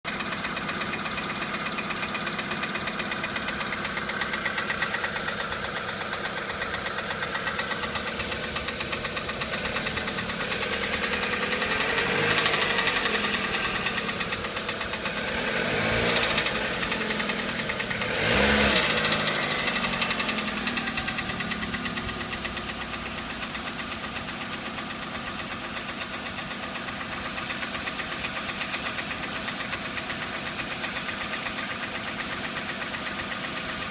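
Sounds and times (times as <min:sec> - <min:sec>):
car engine idling with knock: 0:00.1 - 0:33.9.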